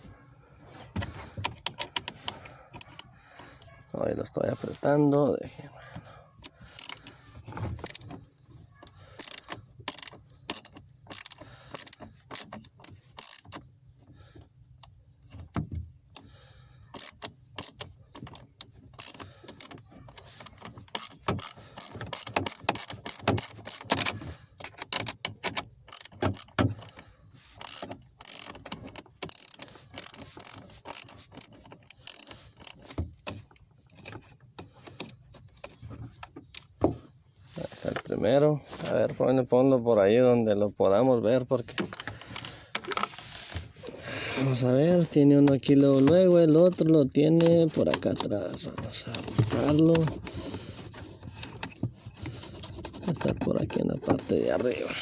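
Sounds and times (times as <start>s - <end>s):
knocks and scrapes on plastic: 0.7s - 3.8s, 7.1s - 10.8s, 27.6s - 39.4s, 45.3s - 55.0s
ratchet-like clicking: 9.2s - 12.5s, 13.2s - 13.6s, 16.9s - 18.4s, 27.6s - 28.6s, 29.2s - 32.8s.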